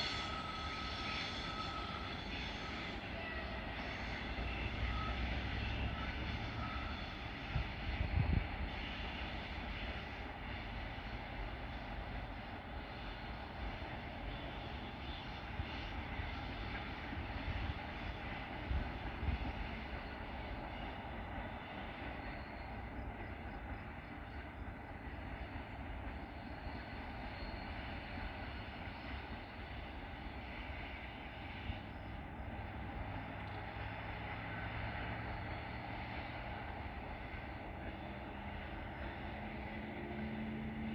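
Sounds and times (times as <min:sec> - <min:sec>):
train wheels rumbling: 0:00.0 - 0:40.9.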